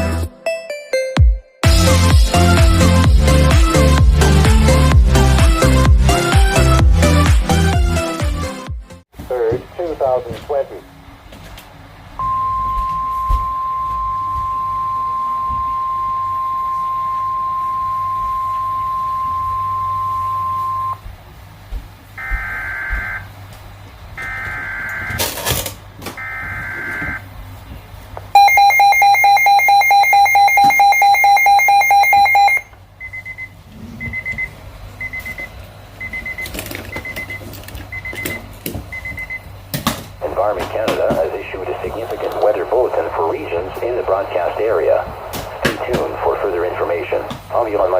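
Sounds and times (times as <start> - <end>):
steady single-pitch beep: 12.2 - 21.0
pulsing multi-tone alarm: 22.2 - 23.3, 24.2 - 25.2, 26.2 - 27.2, 28.4 - 33.3.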